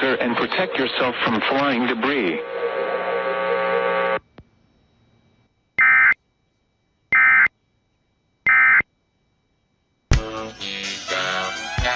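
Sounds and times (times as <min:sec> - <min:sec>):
digital data tone bursts: 0:05.8 - 0:06.2, 0:07.1 - 0:07.5, 0:08.5 - 0:08.9.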